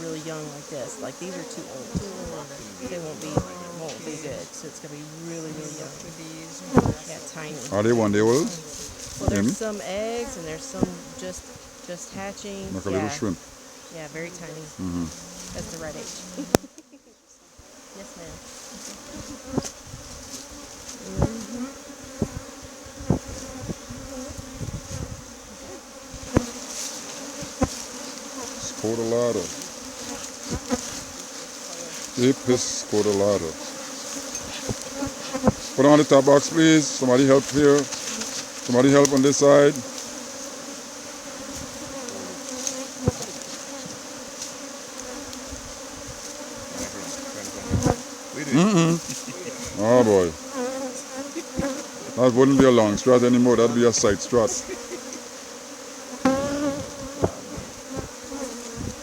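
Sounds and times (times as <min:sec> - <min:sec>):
bees buzzing: 0:00.0 - 0:59.0
hive equipment knocks: 0:26.3 - 0:27.8, 0:56.3 - 0:58.2.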